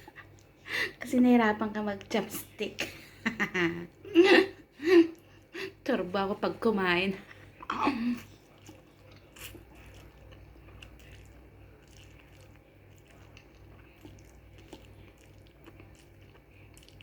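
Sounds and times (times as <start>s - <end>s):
wet chewing: 0.0s - 0.6s, 7.2s - 17.0s
low steady hum: 0.0s - 17.0s.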